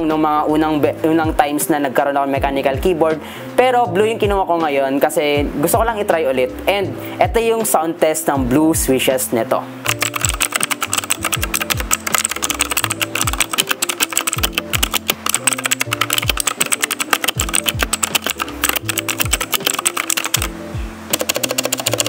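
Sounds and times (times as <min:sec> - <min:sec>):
mechanical keyboard typing clicks: 0:09.9 - 0:20.5, 0:21.1 - 0:22.0
background music with bass beat: 0:20.4 - 0:21.0.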